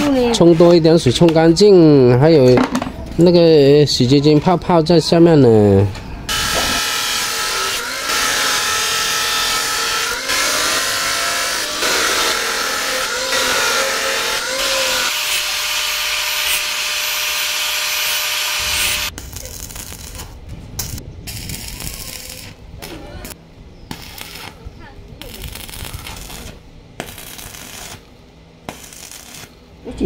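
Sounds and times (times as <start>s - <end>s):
electric power tool whining: 6.3s - 19.2s.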